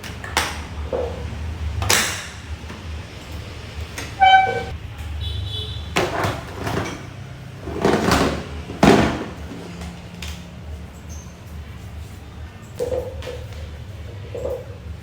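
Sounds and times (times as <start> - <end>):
knocks and clatters: 6.0 - 10.4.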